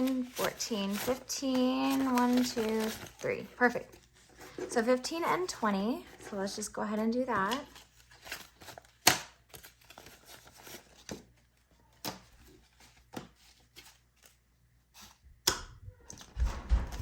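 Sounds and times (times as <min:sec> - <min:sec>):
paper snapping and rustling: 0:00.0 - 0:03.5, 0:07.4 - 0:11.3.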